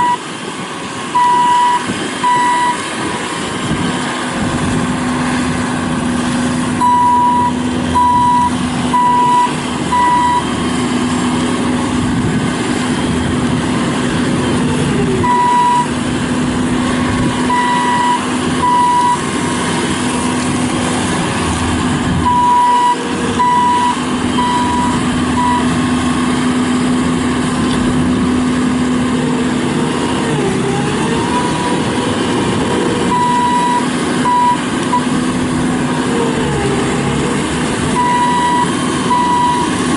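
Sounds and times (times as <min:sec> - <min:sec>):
backup alarm beeping: 0:00.0 - 0:00.2, 0:01.2 - 0:02.8, 0:06.8 - 0:10.5, 0:15.2 - 0:15.9, 0:17.5 - 0:19.2, 0:22.2 - 0:25.7, 0:33.1 - 0:35.1, 0:37.9 - 0:39.8
diesel engine running: 0:00.0 - 0:39.9.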